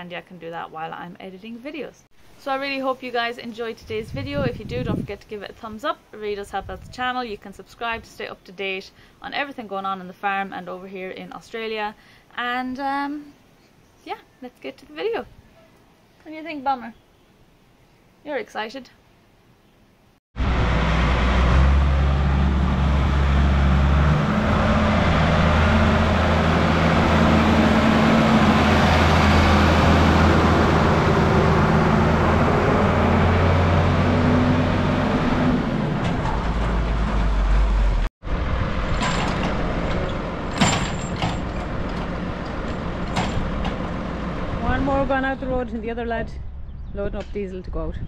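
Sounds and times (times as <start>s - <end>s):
engine sharp knocks: 20.4s - 44.6s
diesel tractor engine running: 20.4s - 45.9s.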